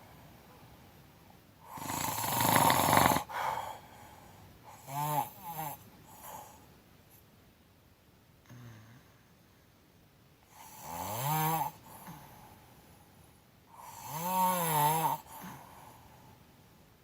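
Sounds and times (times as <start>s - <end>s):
woman snoring: 1.7s - 3.6s, 13.8s - 15.7s.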